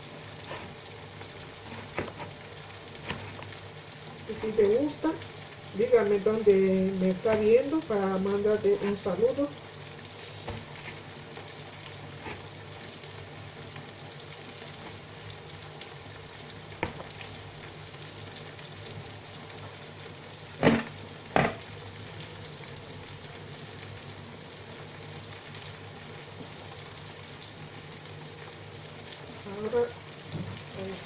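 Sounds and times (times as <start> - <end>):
oil sizzling in a pan: 0.0 - 31.0
sharp knocks: 20.6 - 21.6.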